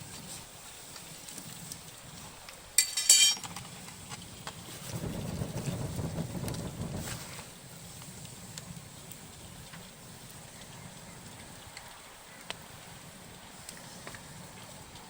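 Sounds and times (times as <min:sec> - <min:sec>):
bonfire crackling: 0:00.0 - 0:15.0
rushing fire: 0:00.0 - 0:15.0.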